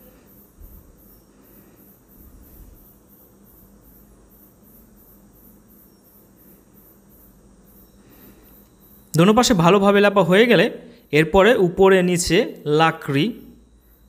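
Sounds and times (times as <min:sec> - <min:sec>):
faint insect chirping: 0:00.0 - 0:14.0
low background hum: 0:00.0 - 0:14.0.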